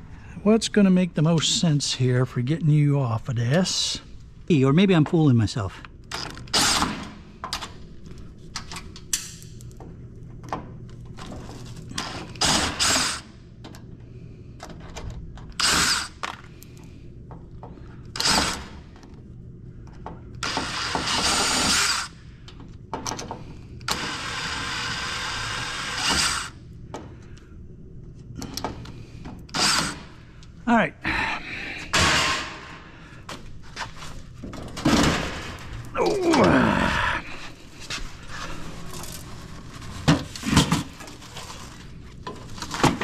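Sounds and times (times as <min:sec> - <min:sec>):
power drill running: 0:12.0 - 0:13.3, 0:15.6 - 0:16.2, 0:20.4 - 0:22.1, 0:23.9 - 0:26.5, 0:29.5 - 0:30.1.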